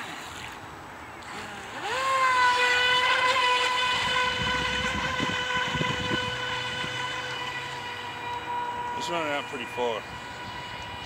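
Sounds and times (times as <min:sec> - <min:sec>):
electric motor whine: 0:01.2 - 0:11.0.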